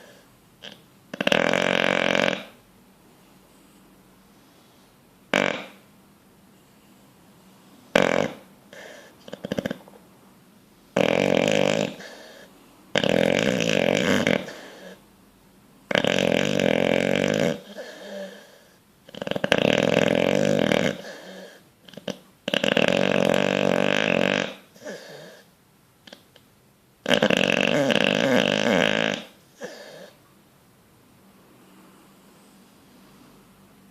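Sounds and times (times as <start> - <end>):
dog snoring: 0.0 - 2.6, 4.4 - 5.9, 7.7 - 10.0, 10.9 - 15.0, 15.9 - 26.3, 27.0 - 30.2.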